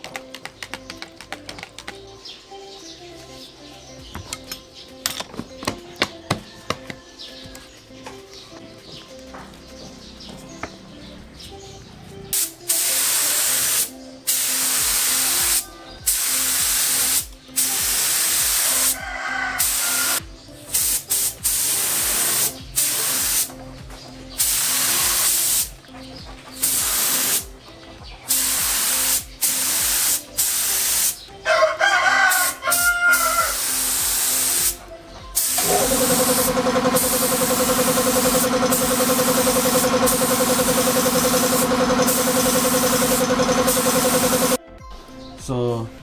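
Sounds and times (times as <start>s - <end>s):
spray gun hissing: 12.4s - 19.0s, 19.6s - 23.5s, 24.4s - 25.7s, 26.6s - 27.5s, 28.3s - 31.2s, 33.4s - 34.8s, 35.4s - 44.6s
rooster crowing: 18.8s - 20.2s, 31.4s - 33.6s.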